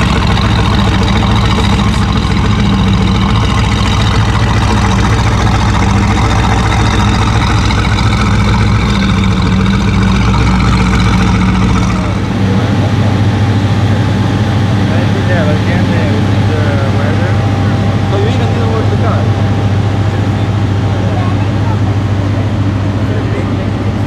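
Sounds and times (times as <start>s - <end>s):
car engine idling: 0.0s - 24.0s.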